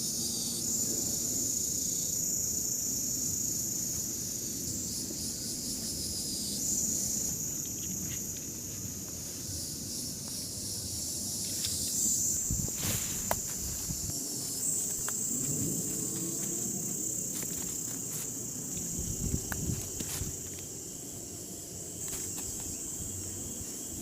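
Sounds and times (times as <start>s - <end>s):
insects chirping: 0.0s - 24.0s.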